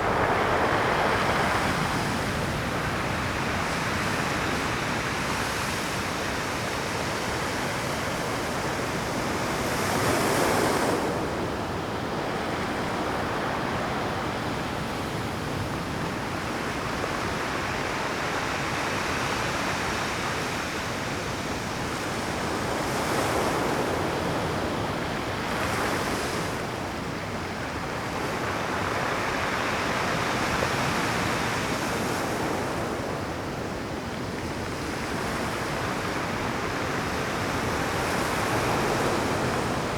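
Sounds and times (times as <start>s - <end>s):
waves crashing: 0.0s - 5.1s
surf washing on rocky shore: 0.0s - 7.1s, 21.9s - 39.9s.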